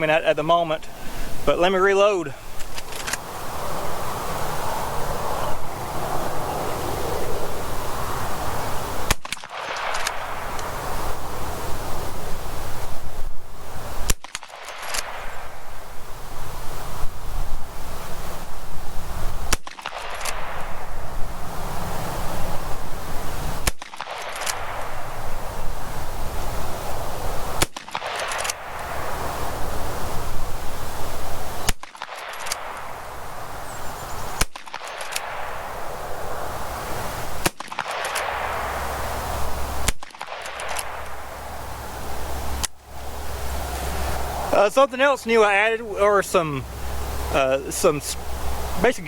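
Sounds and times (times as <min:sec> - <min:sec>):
wind rumble on microphone: 0:02.4 - 0:09.1, 0:09.8 - 0:14.1, 0:15.0 - 0:31.7
rifle shots: 0:09.1 - 0:10.8, 0:14.0 - 0:15.6, 0:19.5 - 0:21.0, 0:23.6 - 0:25.2, 0:27.6 - 0:29.2, 0:31.6 - 0:33.2, 0:34.4 - 0:35.9, 0:37.4 - 0:39.1, 0:39.8 - 0:41.4.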